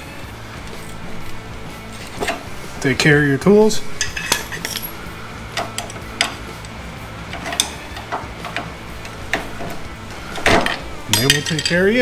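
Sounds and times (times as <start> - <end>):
steady low hum: 0.0 - 12.0
ratchet clicking: 0.5 - 12.0.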